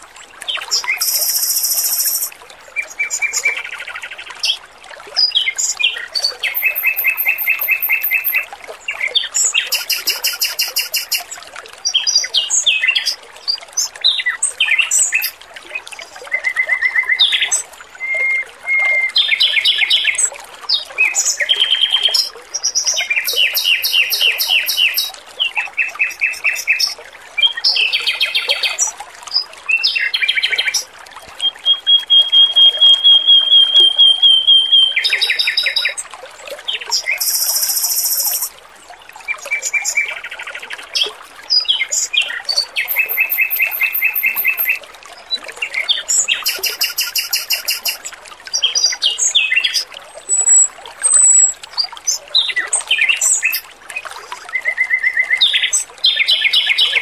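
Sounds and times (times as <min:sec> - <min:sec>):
trickling water: 0:00.0 - 0:57.0
bird singing trilled phrases: 0:00.6 - 0:03.6, 0:05.2 - 0:08.5, 0:09.2 - 0:11.2, 0:14.1 - 0:15.4, 0:21.1 - 0:28.9, 0:31.4 - 0:36.0, 0:36.7 - 0:38.5, 0:41.6 - 0:44.8, 0:45.7 - 0:53.6.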